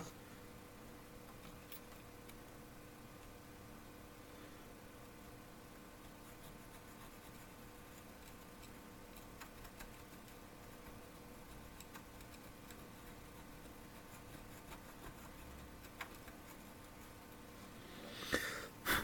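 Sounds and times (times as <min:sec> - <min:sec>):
faint room hum: 0:00.0 - 0:19.0
light clicks and scratches: 0:01.2 - 0:02.5, 0:06.0 - 0:17.6.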